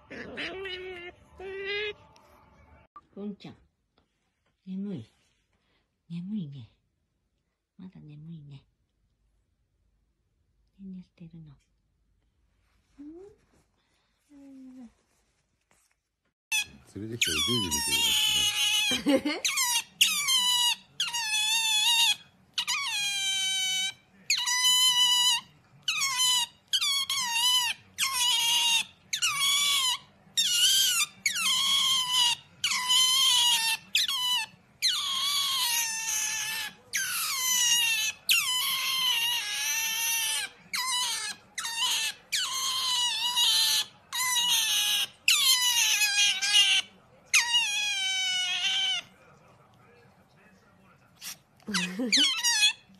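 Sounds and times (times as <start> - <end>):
otter squeaking: 0.0 - 2.0, 16.5 - 49.1.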